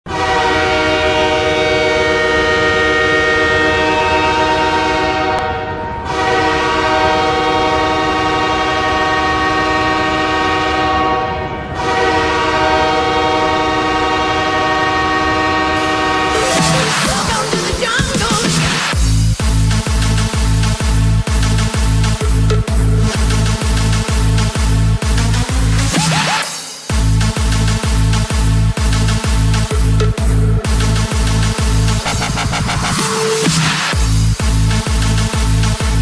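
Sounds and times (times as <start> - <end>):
hockey goal horn blasts: 0.1 - 17.2.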